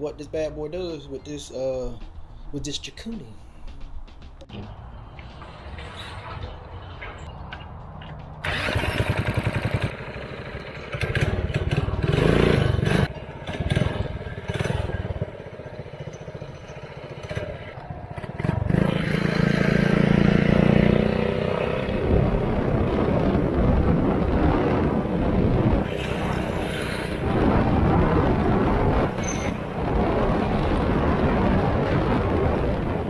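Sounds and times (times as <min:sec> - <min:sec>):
drill starting engine: 0:08.4 - 0:09.9
small engine revving: 0:08.4 - 0:32.8.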